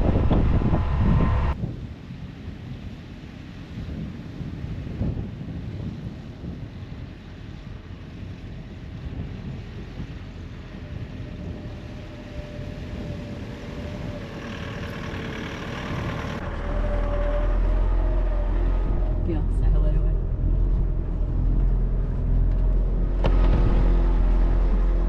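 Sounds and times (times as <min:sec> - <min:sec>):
loud low rumble: 0:00.0 - 0:01.9, 0:06.5 - 0:25.0
wind buffeting microphone: 0:00.0 - 0:25.0
car engine driving on sand: 0:06.0 - 0:25.0.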